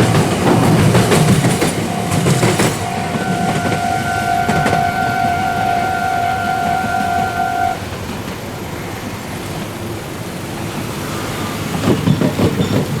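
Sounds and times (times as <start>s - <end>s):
low rumbling noise: 0.0s - 6.1s
level crossing warning bell: 0.0s - 7.8s.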